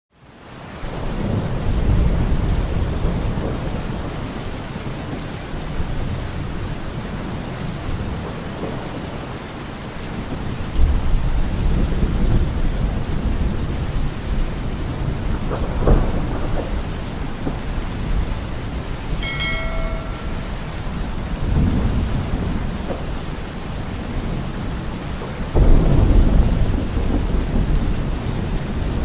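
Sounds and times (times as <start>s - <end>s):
heavy rain: 0.1s - 29.0s
rolling thunder: 10.1s - 29.0s.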